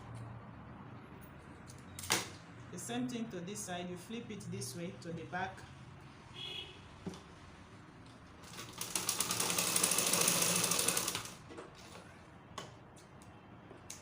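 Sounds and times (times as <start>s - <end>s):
sewing machine stitching: 8.4s - 11.4s.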